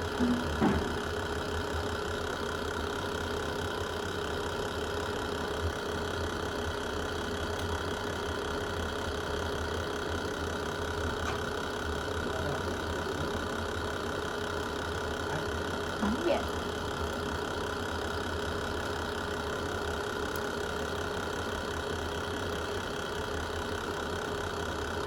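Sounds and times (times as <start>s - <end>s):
fireplace fire burning: 20.2s - 21.9s.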